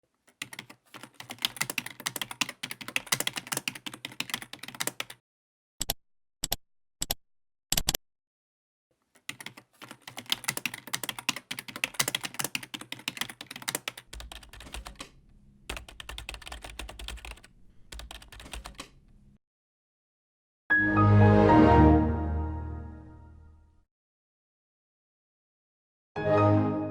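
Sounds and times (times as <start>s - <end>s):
typing on computer keyboard: 0.3s - 5.2s, 9.2s - 19.2s.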